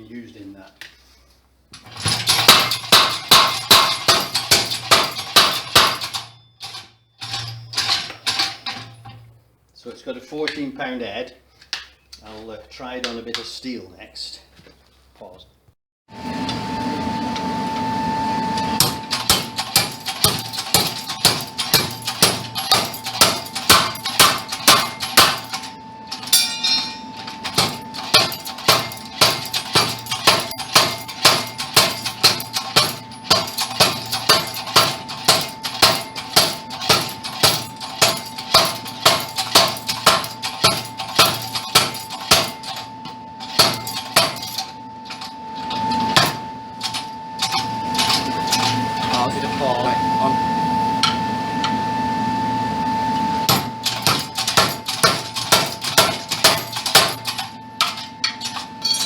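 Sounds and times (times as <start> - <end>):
hammer striking steel: 1.8 - 9.4, 18.8 - 49.5, 53.4 - 59.0.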